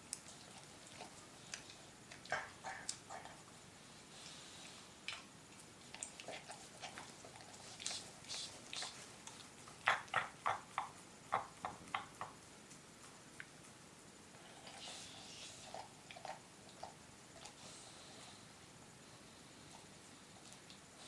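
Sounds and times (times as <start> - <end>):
dog licking: 5.0 - 13.7.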